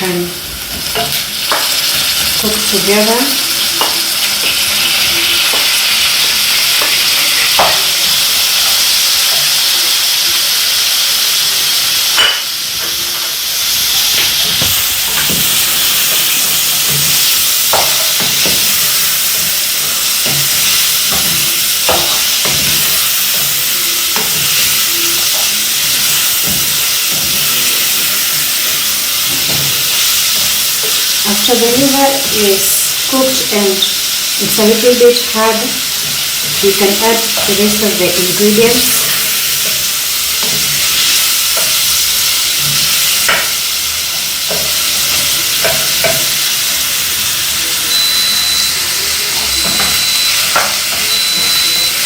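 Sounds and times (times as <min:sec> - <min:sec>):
liver and onions sizzling in a pan: 0:00.0 - 0:52.0
stirring taps and scrapes: 0:14.1 - 0:28.0.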